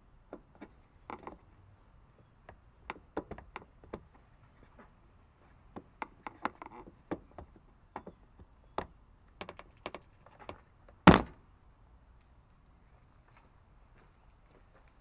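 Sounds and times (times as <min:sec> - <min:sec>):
loud thunk: 0:11.0 - 0:11.4.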